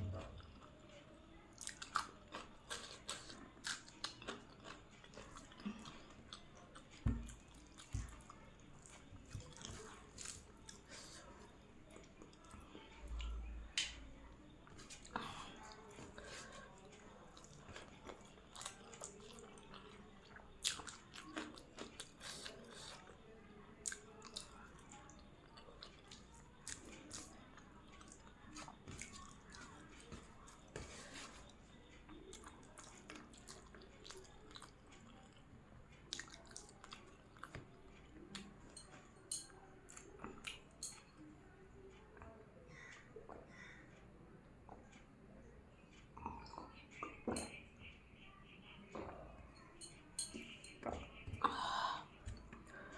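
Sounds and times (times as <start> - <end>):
person chewing food: 1.6 - 11.3, 14.7 - 23.2, 25.5 - 31.5, 32.1 - 37.7.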